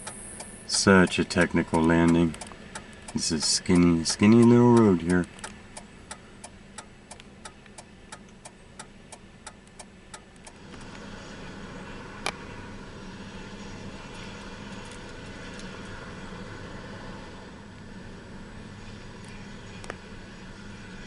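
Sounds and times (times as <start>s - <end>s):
hazard light ticking: 0.0s - 10.6s
sharp click: 0.0s - 10.6s
helicopter engine drone: 10.5s - 21.0s.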